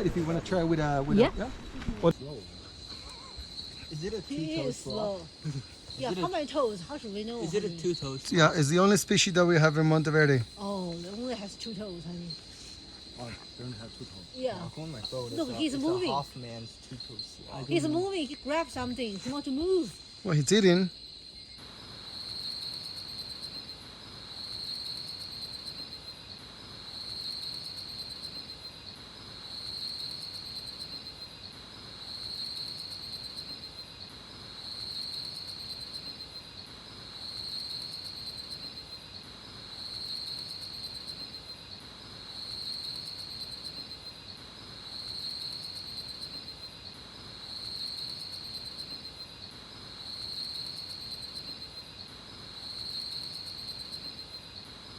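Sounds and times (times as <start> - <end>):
insects trilling: 0.0 - 54.9.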